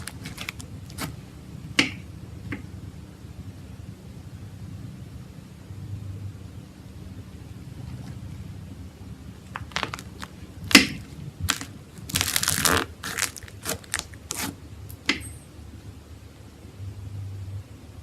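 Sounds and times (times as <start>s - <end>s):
slime popping and crunching: 0.0s - 1.2s, 9.5s - 14.5s.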